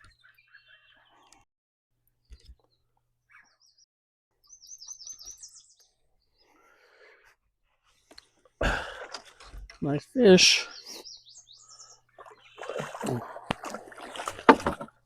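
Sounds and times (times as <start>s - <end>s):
songbird chirping: 0.0s - 1.5s, 2.1s - 7.2s, 8.0s - 14.8s.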